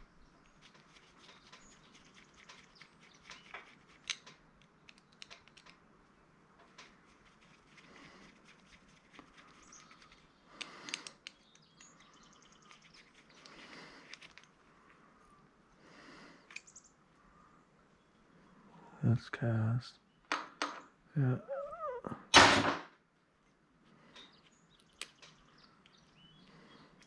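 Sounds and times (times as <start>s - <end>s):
small plastic parts clicking: 0.4s - 5.8s, 9.2s - 14.6s, 24.1s - 27.0s.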